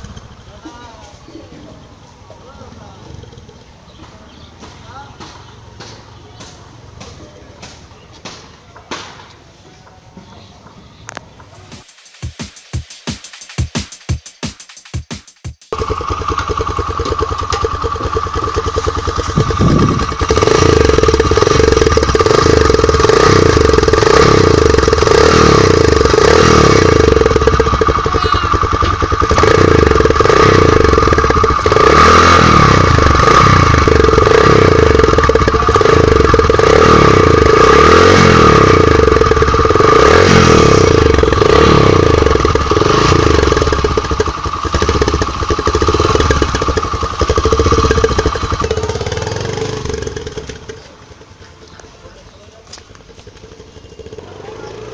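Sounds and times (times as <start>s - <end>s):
motorcycle engine running: 0.0s - 8.4s, 11.1s - 54.9s.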